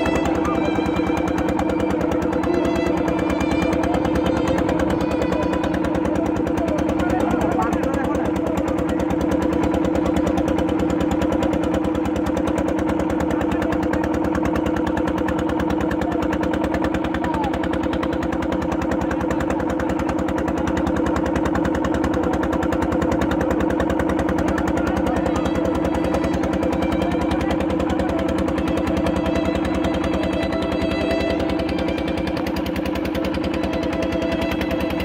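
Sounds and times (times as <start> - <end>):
boat engine running: 0.0 - 35.0.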